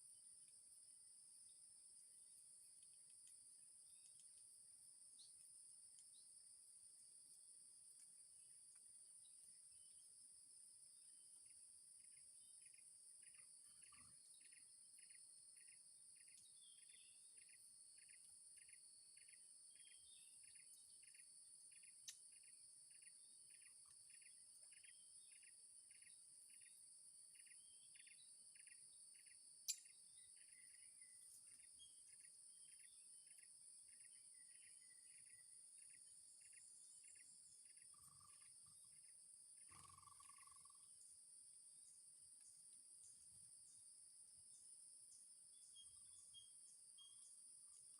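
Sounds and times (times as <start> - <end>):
high-pitched insect drone: 27.4 - 41.0.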